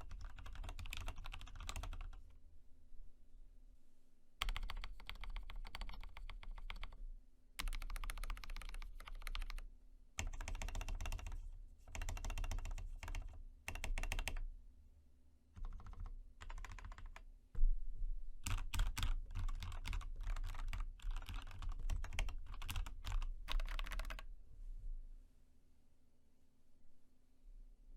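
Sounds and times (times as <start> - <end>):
fast mechanical keyboard typing: 0.0 - 2.2, 4.4 - 7.0, 7.6 - 9.6, 10.2 - 14.4, 15.6 - 17.2, 18.4 - 24.2.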